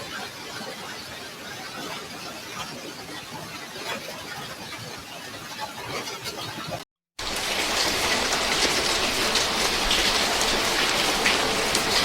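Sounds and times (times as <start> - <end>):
heavy rain pouring: 7.2 - 12.0.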